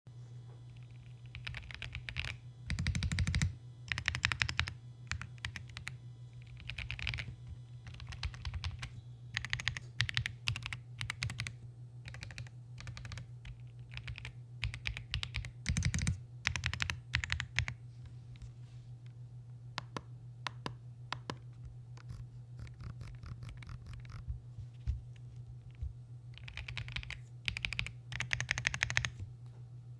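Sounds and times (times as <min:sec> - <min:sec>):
mechanical keyboard typing: 0:00.8 - 0:17.8, 0:22.0 - 0:24.2, 0:26.4 - 0:29.2.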